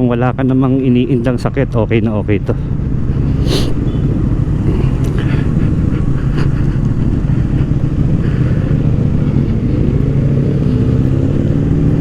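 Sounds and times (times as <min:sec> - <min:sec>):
motorcycle engine running: 0:02.7 - 0:12.0.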